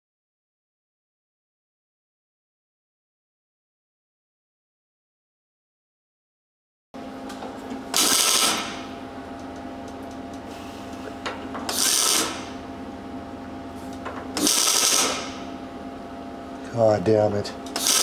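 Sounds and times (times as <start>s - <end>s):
steady hum: 7.0s - 18.0s
welder arc crackling: 7.3s - 12.8s, 13.9s - 15.6s, 16.6s - 18.0s.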